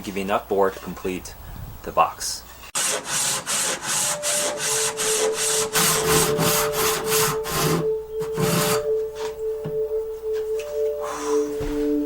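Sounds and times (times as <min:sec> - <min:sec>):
hand saw rasping strokes: 0:02.7 - 0:09.0
soft sustained music tones: 0:04.9 - 0:12.0.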